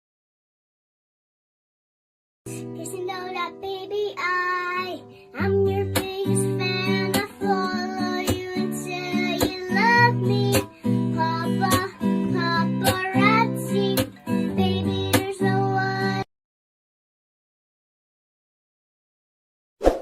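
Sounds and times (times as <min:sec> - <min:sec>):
strummed acoustic guitar: 0:02.5 - 0:16.2
person singing: 0:02.5 - 0:16.3.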